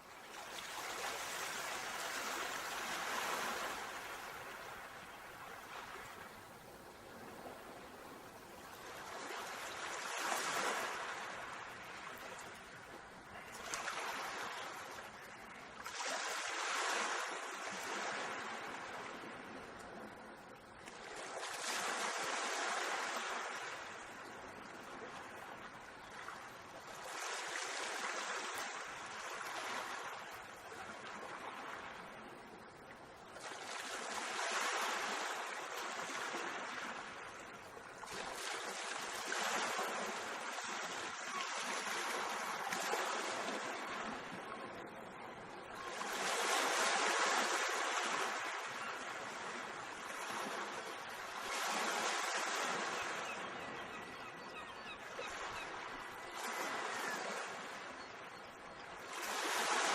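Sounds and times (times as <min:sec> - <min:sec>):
sea waves breaking on shore: 0:00.0 - 0:58.3, 0:59.0 - 0:59.9.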